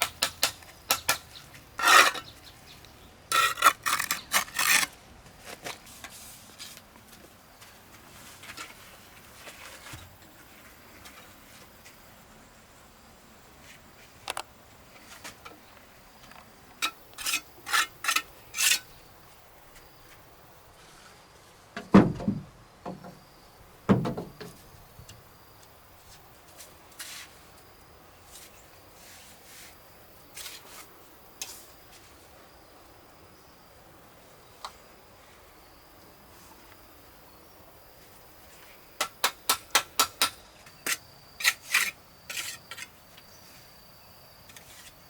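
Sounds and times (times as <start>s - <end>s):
heavy thuds: 21.8s - 23.0s
faint insect trill: 22.4s - 45.0s.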